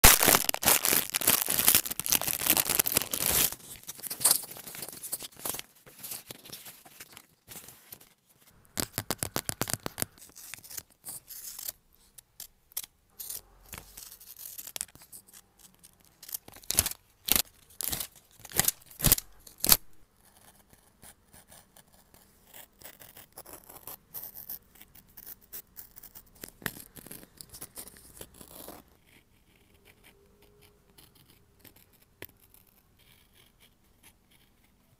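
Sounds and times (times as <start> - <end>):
paper scratching and rustling: 0.1 - 11.8.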